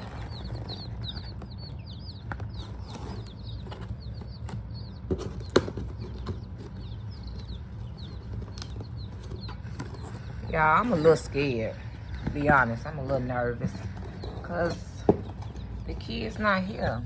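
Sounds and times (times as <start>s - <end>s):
knocks and scrapes: 0.0s - 11.2s
baby chicks peeping: 0.0s - 17.0s.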